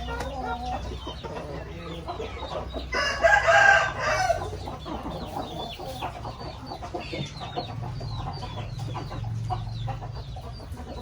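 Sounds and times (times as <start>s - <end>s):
chickens clucking: 0.0s - 11.0s.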